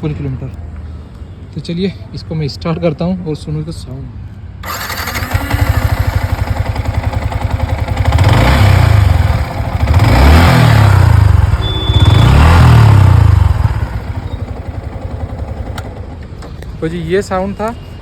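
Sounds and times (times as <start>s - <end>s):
motorcycle engine idling and revving: 4.6s - 16.8s.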